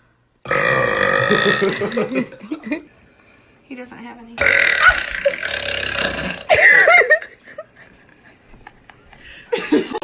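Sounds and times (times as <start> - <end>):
person burping: 0.4 - 2.5, 4.4 - 6.9.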